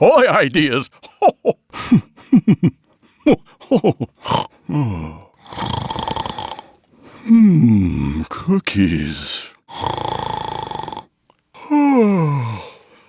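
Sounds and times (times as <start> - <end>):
recorded voice snoring and grunting: 4.2 - 8.3, 9.6 - 11.1.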